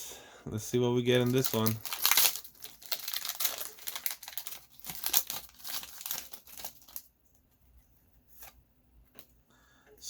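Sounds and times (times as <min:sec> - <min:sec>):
foil wrapper crinkling and tearing: 0:01.1 - 0:07.1.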